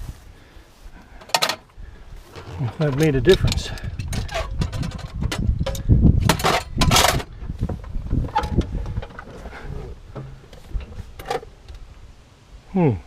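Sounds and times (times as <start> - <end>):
metal clinking and clattering: 2.3 - 11.8.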